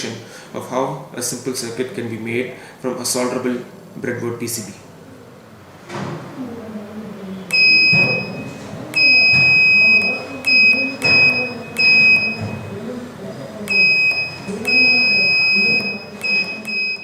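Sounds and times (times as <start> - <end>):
electronic buzzer beeping: 7.5 - 12.7, 13.7 - 17.0.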